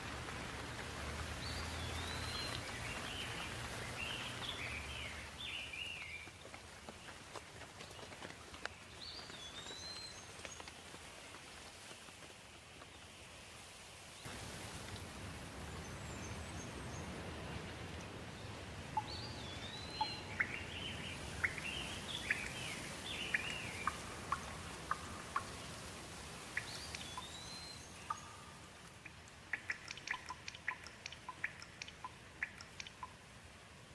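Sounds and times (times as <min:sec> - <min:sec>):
steady rain: 0:00.0 - 0:33.9
birds singing: 0:01.2 - 0:06.3, 0:15.7 - 0:25.8, 0:26.5 - 0:28.8.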